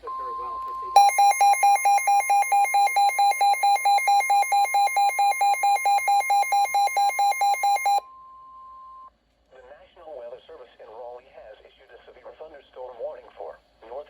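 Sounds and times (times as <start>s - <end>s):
steady warning alarm tone: 0.0s - 8.0s
radio alarm beeps: 0.0s - 8.1s.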